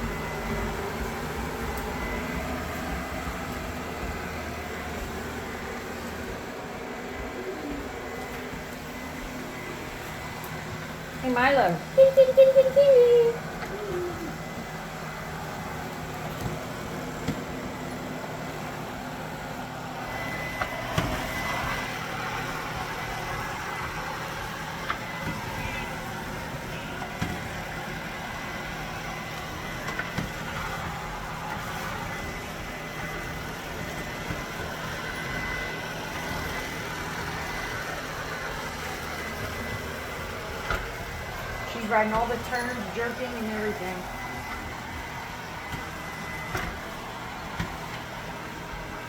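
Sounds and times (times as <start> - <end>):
robot vacuum motor hum: 0.0 - 19.0.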